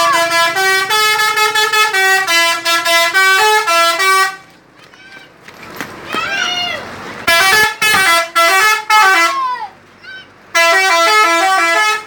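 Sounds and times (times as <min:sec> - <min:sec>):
multi-tone musical bus horn: 0:00.0 - 0:04.5, 0:07.2 - 0:12.0.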